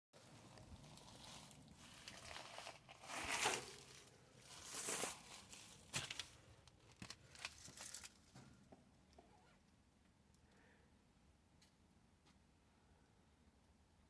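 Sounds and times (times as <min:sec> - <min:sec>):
rustling and scraping: 0:00.2 - 0:09.6.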